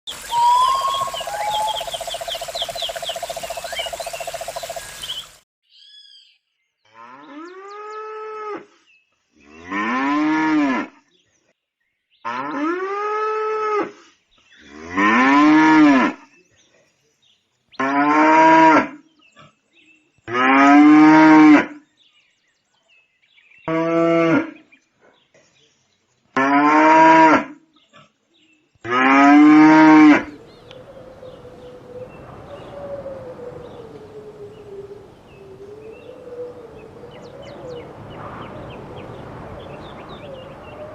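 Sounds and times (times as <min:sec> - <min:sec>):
high bird-like chirps: 0:00.1 - 0:06.3
cows mooing: 0:29.0 - 0:40.9.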